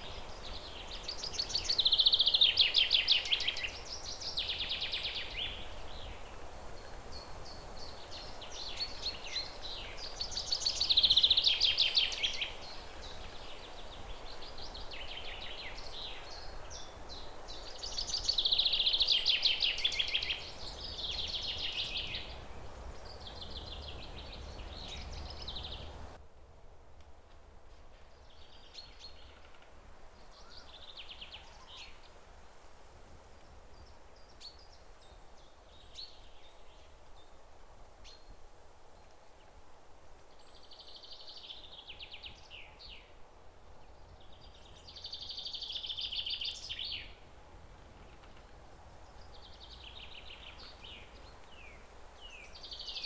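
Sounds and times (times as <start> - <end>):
outdoor background hiss: 0.0 - 53.0
songbirds trilling: 8.5 - 26.2.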